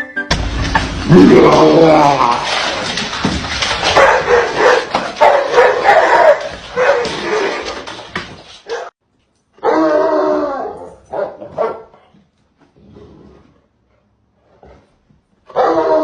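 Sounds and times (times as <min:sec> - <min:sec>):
dog barking and crying: 0:03.9 - 0:07.6, 0:08.6 - 0:08.9, 0:09.6 - 0:11.9, 0:15.5 - 0:16.0.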